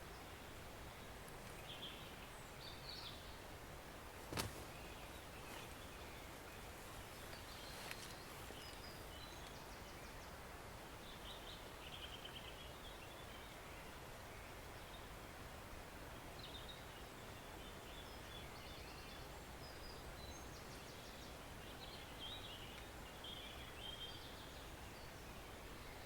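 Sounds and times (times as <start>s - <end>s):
small birds chirping: 0.0s - 15.5s, 16.3s - 26.0s.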